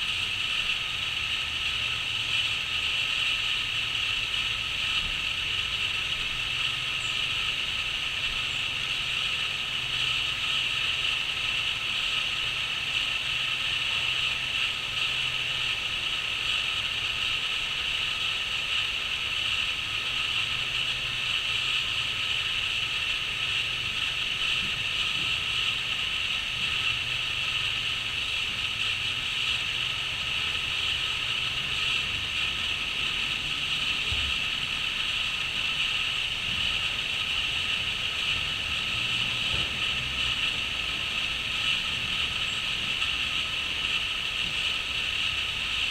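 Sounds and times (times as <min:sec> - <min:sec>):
crickets trilling: 0:00.0 - 0:45.9.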